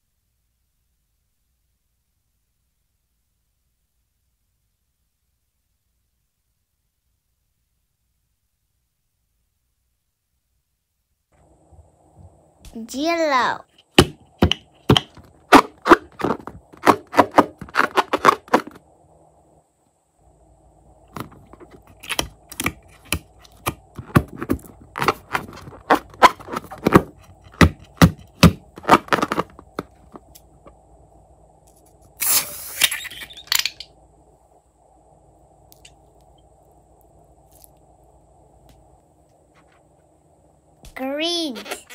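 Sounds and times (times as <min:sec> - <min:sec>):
sharp clicks and snaps: 0:35.7 - 0:36.4.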